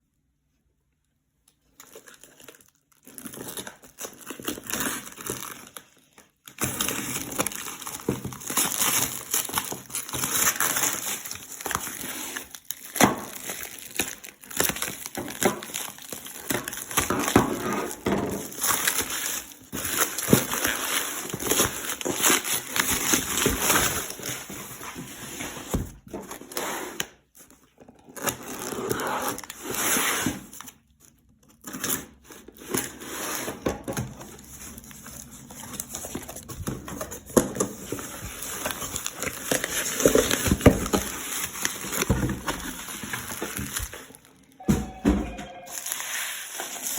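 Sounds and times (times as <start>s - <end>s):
packaging crinkling and rustling: 1.5s - 46.9s.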